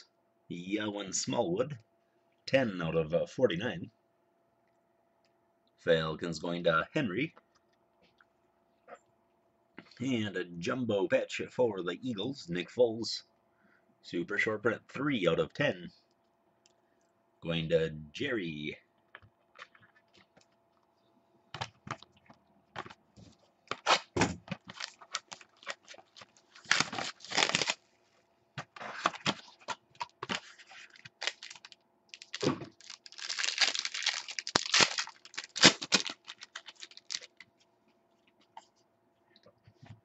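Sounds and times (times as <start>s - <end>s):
wrapper tearing and crinkling: 24.7s - 27.9s, 30.6s - 37.4s.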